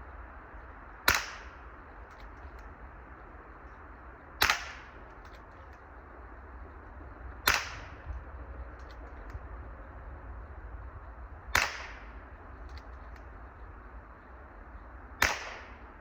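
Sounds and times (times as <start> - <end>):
gunshots: 4.4 - 5.0, 7.4 - 8.0, 11.5 - 12.1, 15.2 - 15.8.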